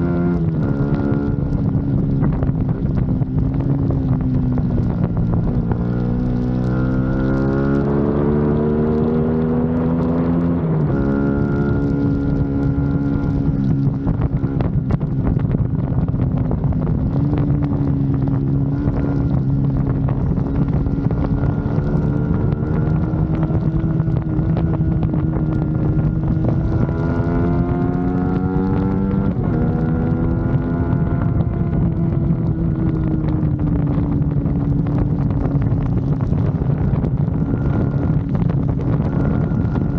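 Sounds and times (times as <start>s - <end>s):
motorcycle engine revving: 0.0s - 39.9s
wind buffeting microphone: 0.0s - 39.9s.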